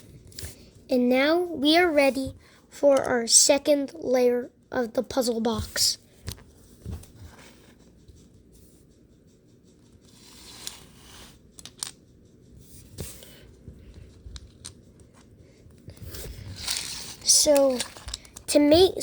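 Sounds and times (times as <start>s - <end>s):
rustling of plastic pieces: 16.0s - 18.6s
small plastic clicks: 16.6s - 18.6s.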